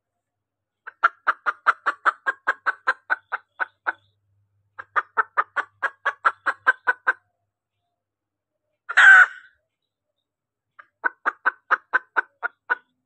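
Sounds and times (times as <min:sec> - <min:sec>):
hen clucking: 0:00.8 - 0:07.2, 0:08.9 - 0:09.6, 0:10.8 - 0:13.0.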